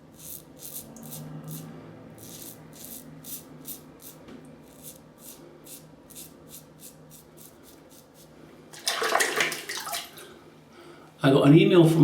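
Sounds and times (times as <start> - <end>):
razor scraping stubble: 0.0 - 8.3.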